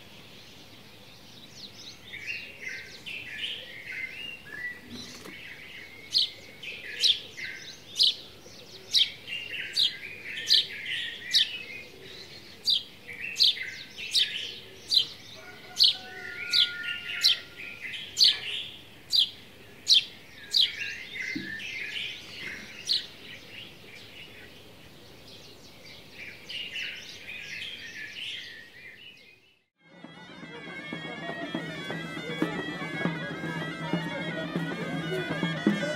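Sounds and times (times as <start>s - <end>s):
birds twittering: 0.0s - 35.9s.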